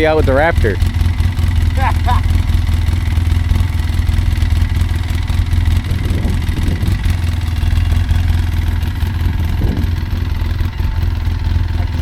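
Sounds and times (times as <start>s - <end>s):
utility vehicle engine droning: 0.0s - 12.0s.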